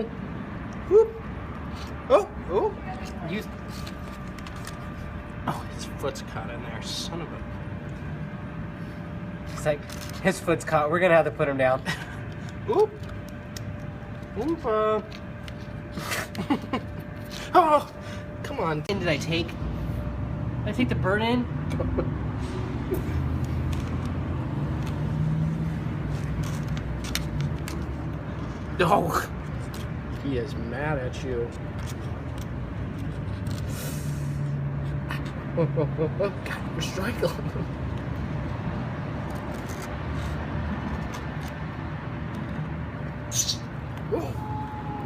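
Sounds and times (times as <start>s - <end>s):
motor vehicle rumbling: 0.0s - 45.0s
engine humming: 31.4s - 45.0s.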